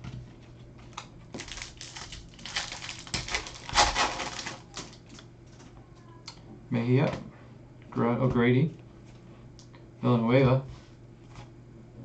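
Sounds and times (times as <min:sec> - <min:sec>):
cards and foil wrappers crinkling: 0:00.9 - 0:05.7.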